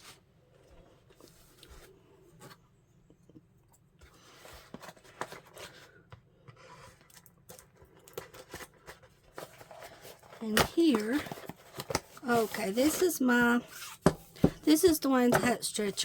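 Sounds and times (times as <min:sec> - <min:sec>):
rustling while unpacking: 0:03.8 - 0:16.0.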